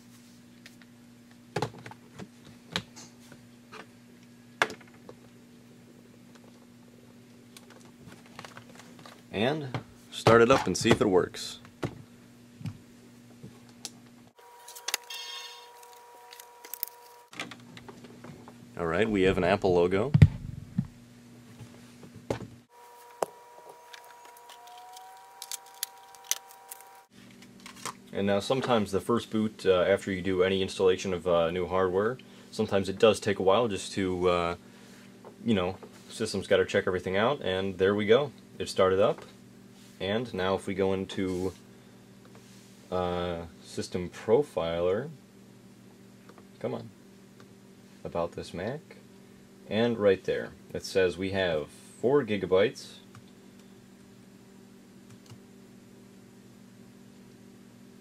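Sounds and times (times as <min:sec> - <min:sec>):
faint steady hum: 0:00.0 - 0:58.0
faint electronic whine: 0:14.2 - 0:17.6, 0:22.6 - 0:34.6.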